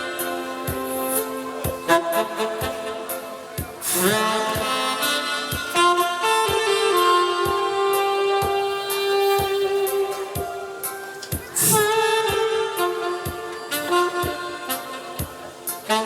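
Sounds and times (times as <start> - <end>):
trumpet playing slow melody: 0.0 - 11.0, 11.6 - 16.0
backing track with steady beat: 0.0 - 16.0.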